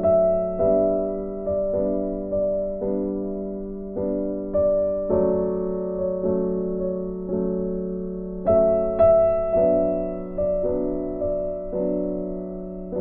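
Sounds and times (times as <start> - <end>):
piano playing slow chords: 0.0 - 13.0.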